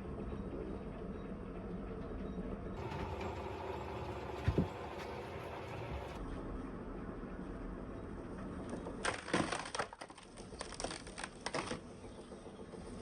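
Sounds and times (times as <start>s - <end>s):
machine motor droning: 2.8s - 6.2s.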